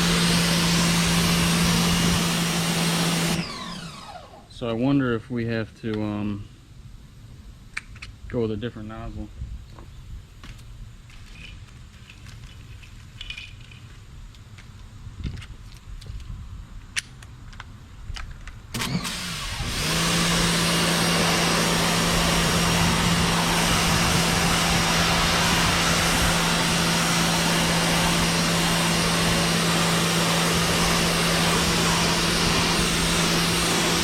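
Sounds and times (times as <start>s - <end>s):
pressure washer motor hum: 0.0s - 4.6s, 18.8s - 34.0s
water jet hissing: 18.9s - 34.0s.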